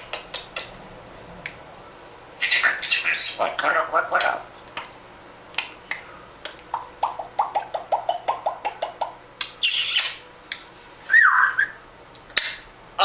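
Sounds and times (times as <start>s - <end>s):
parrot clicking chirps: 0.0s - 0.7s, 5.6s - 10.2s
parrot whistle rising and falling: 9.6s - 10.2s, 11.0s - 11.8s.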